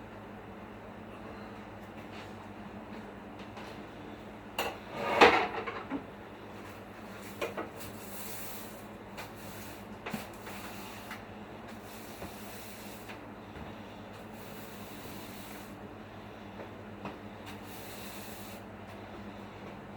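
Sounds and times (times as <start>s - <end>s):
steady low hum: 0.0s - 19.9s.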